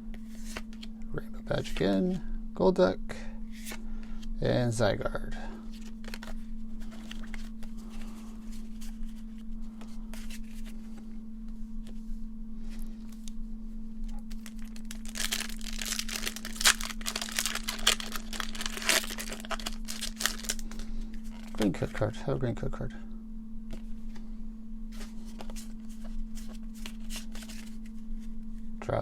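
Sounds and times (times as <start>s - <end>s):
foil and cards rustling: 5.6s - 11.1s, 14.0s - 21.9s, 24.9s - 28.3s
foil wrapper crinkling and tearing: 14.1s - 21.6s.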